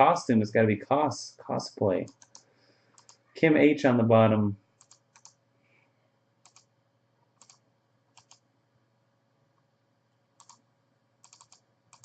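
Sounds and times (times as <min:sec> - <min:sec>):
faint computer clicks: 0:02.0 - 0:03.2, 0:04.8 - 0:05.4, 0:06.4 - 0:06.7, 0:07.4 - 0:08.4, 0:10.4 - 0:10.6, 0:11.2 - 0:12.0.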